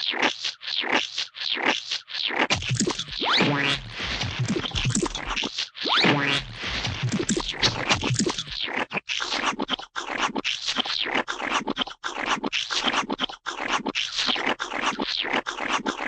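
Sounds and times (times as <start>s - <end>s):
rough scratching strokes: 2.6s - 5.4s, 6.3s - 8.9s.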